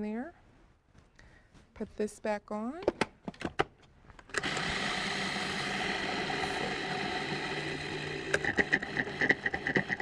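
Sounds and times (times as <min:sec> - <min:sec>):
food processor motor running: 0:04.4 - 0:10.0.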